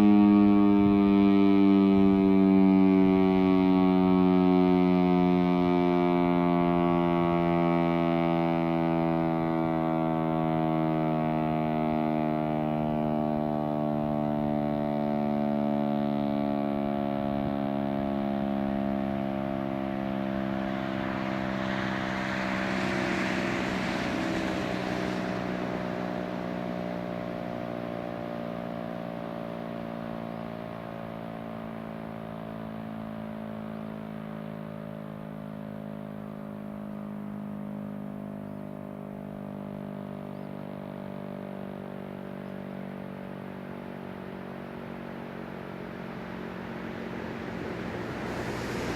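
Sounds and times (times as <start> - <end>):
siren winding down: 0.0 - 33.3, 40.8 - 48.9
vehicle passing: 16.8 - 29.2, 43.8 - 48.9.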